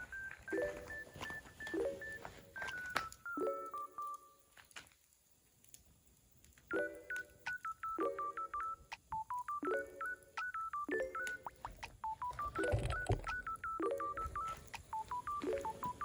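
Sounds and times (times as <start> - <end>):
light melody over soft chords: 0.0 - 4.5, 12.2 - 16.0.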